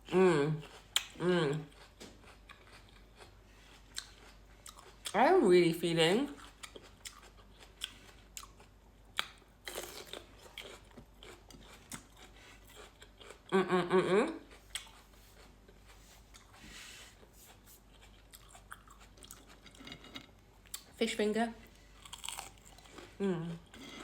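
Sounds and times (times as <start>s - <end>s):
person humming: 0.0s - 0.6s, 1.2s - 1.7s, 13.5s - 14.4s, 23.2s - 23.7s
chewing crunchy fried food: 0.5s - 5.2s, 6.2s - 13.6s, 14.3s - 21.0s, 21.7s - 24.0s.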